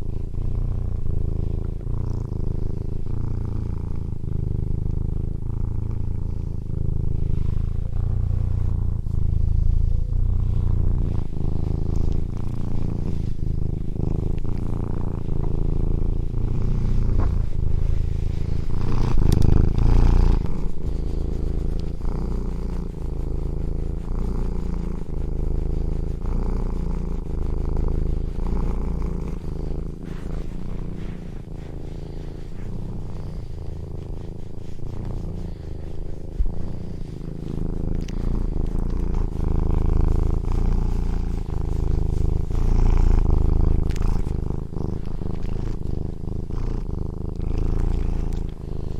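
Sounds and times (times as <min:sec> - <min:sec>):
cat purring: 0:00.0 - 0:48.9.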